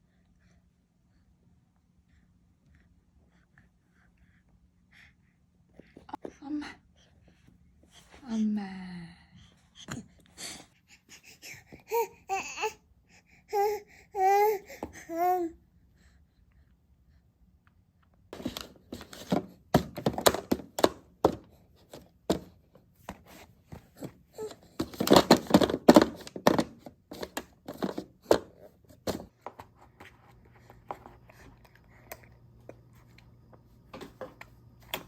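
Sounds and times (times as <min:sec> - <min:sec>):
low steady hum: 0:26.9 - 0:35.0.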